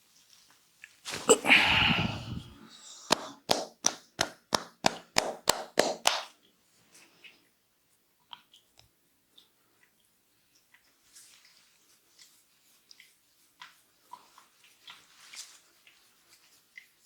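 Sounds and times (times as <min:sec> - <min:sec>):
hands rubbing head: 0:01.1 - 0:06.3
sharp hand slaps: 0:01.8 - 0:06.3.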